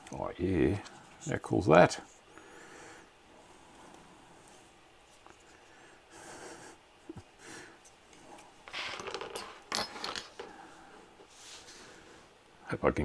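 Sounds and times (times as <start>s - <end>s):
soft rustles: 7.8s - 12.3s.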